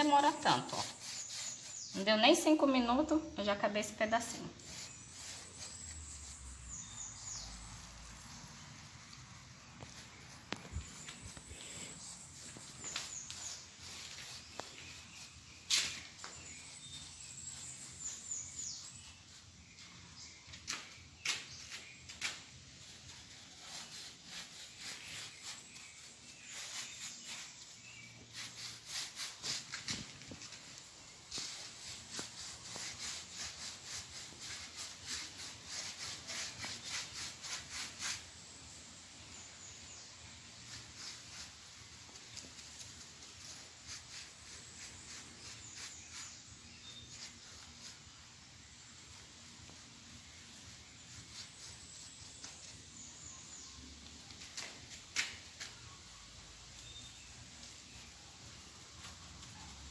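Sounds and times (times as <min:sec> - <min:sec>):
hand scrubbing brick: 0:00.0 - 0:02.5, 0:04.2 - 0:19.5, 0:22.8 - 0:29.9, 0:31.4 - 0:38.3.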